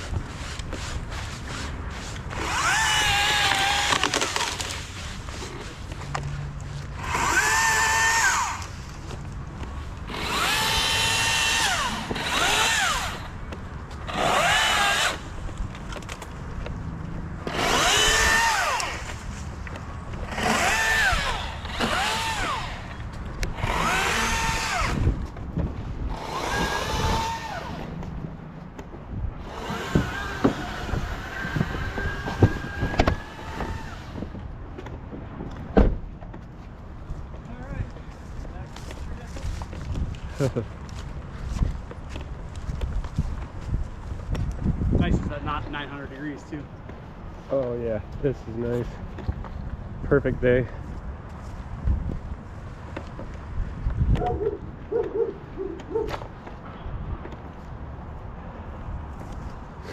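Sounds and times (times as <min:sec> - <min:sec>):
chainsaw cutting wood: 0:00.3 - 0:05.8, 0:07.0 - 0:08.8, 0:10.0 - 0:13.4, 0:14.0 - 0:16.2, 0:17.4 - 0:19.3, 0:20.1 - 0:25.2, 0:26.1 - 0:28.0, 0:29.4 - 0:34.3.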